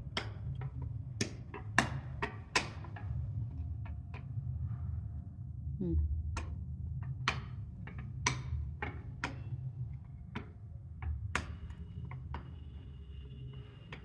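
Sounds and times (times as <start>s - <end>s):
steady low rumble: 3.1s - 7.1s.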